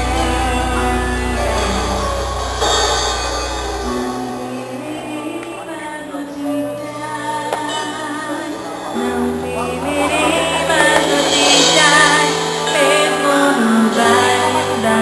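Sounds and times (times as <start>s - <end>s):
bass line: 0.0s - 4.8s
band playing chords: 0.0s - 6.1s, 7.2s - 15.0s
person singing: 0.0s - 15.0s.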